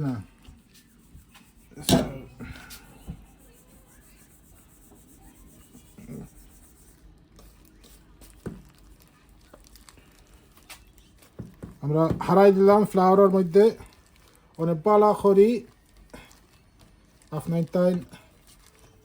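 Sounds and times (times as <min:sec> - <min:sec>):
chicken rubbed in flour: 0:00.0 - 0:11.4
sharp knocks: 0:01.8 - 0:02.5.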